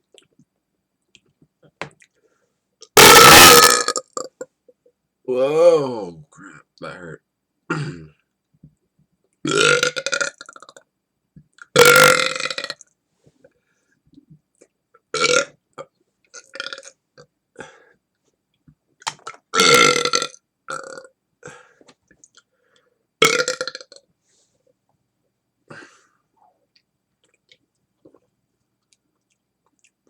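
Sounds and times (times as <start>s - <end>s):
man burping: 3.0s - 4.5s, 5.3s - 8.2s, 11.8s - 12.7s, 19.6s - 21.6s, 23.2s - 23.9s.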